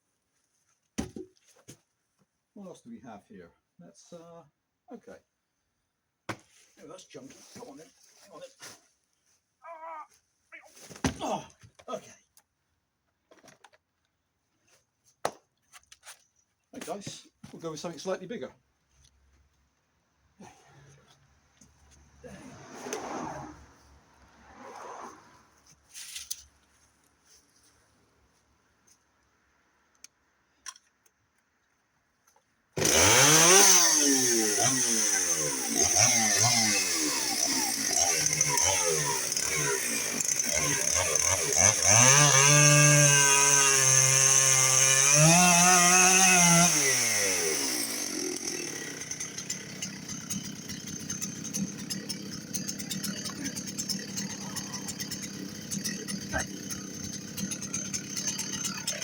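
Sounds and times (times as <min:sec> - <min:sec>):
chainsaw revving and idling: 0:32.8 - 0:59.0.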